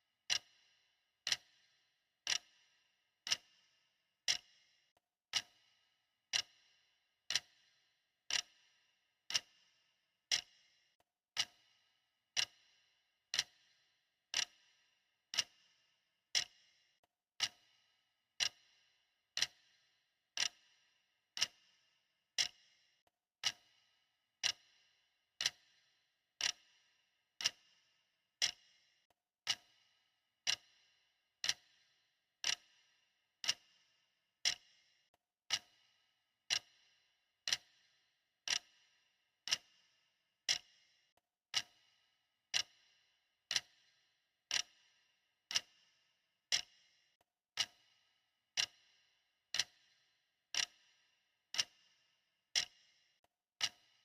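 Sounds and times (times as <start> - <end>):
clock ticking: 0.3 - 0.5, 1.3 - 1.6, 2.3 - 2.5, 3.3 - 3.5, 4.3 - 4.5, 5.3 - 5.6, 6.3 - 6.6, 7.3 - 7.5, 8.3 - 8.5, 9.3 - 9.5, 10.3 - 10.5, 11.4 - 11.6, 12.3 - 12.6, 13.3 - 13.6, 14.4 - 14.6, 15.3 - 15.6, 18.4 - 18.6, 19.4 - 19.6, 20.4 - 20.6, 21.4 - 21.6, 23.4 - 23.7, 24.4 - 24.7, 25.4 - 25.7, 26.4 - 26.6, 27.4 - 27.6, 28.4 - 28.6, 29.4 - 29.8, 30.4 - 30.7, 31.4 - 31.8, 32.4 - 32.7, 33.4 - 33.7, 34.4 - 34.7, 35.5 - 35.8, 36.5 - 36.8, 37.5 - 37.8, 38.5 - 38.7, 39.5 - 39.7, 40.5 - 40.7, 41.5 - 41.8, 42.5 - 42.8, 43.5 - 43.8, 44.5 - 44.8, 45.5 - 45.7, 46.5 - 46.7, 47.6 - 47.8, 48.6 - 48.8, 49.5 - 49.8, 50.6 - 50.8, 51.5 - 51.8, 52.5 - 52.8, 53.6 - 53.9.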